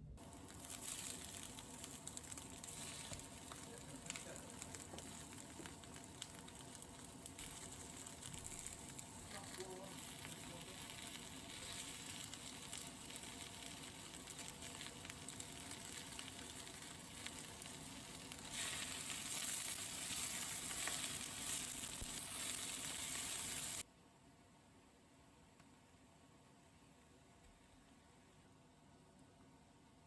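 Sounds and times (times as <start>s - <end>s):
food sizzling in a pan: 0.2s - 23.8s.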